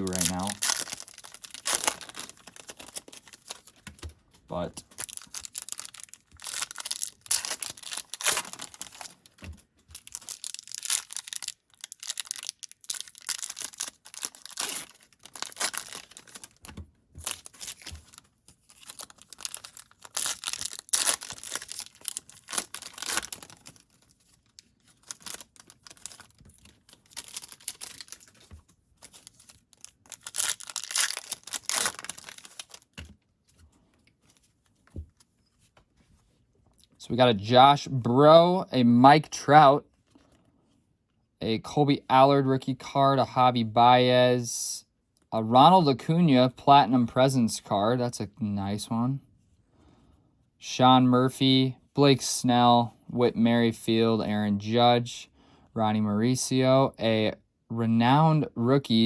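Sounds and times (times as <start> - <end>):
foil wrappers tearing and crinkling: 0.0 - 3.8, 4.9 - 9.3, 9.9 - 33.0.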